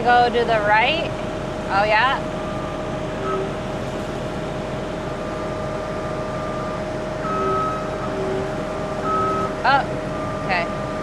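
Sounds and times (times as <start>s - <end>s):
track loader engine whine: 0.0s - 11.0s
short high-pitched tones: 2.4s - 11.0s.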